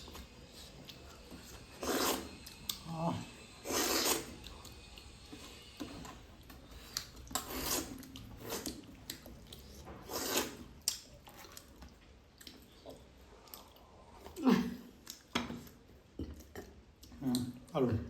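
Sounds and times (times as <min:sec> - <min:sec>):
chewing: 0:00.0 - 0:02.9, 0:03.5 - 0:17.7
food scraping on a plate: 0:00.6 - 0:02.5.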